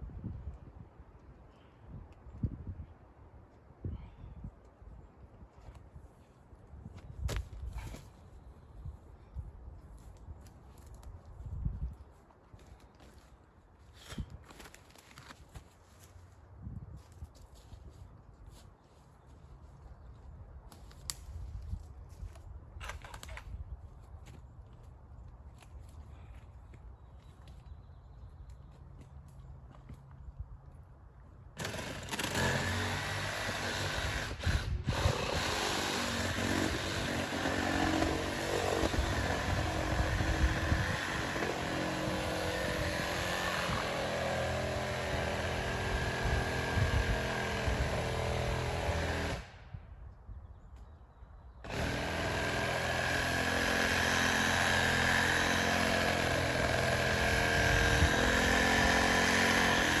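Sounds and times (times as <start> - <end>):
chainsaw running: 31.6 - 49.6, 51.6 - 60.0.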